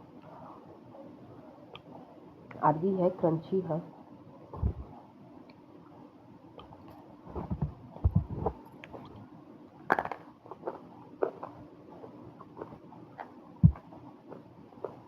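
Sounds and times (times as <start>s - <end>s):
clay being bitten and chewed: 10.0s - 15.0s.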